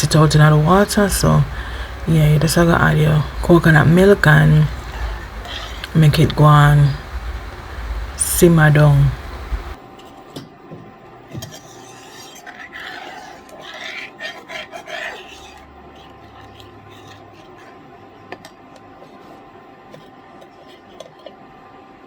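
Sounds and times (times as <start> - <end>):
utensil scraping cooking pot: 0.0 - 8.2.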